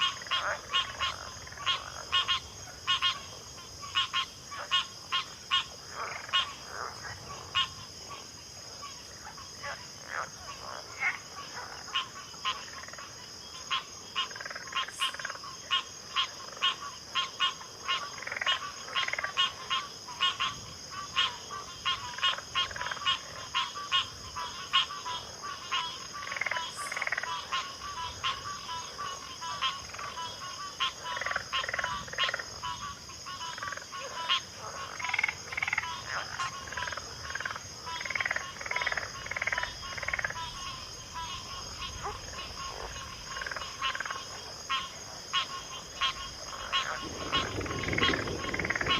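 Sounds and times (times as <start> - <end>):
frogs croaking: 0.0 - 48.9.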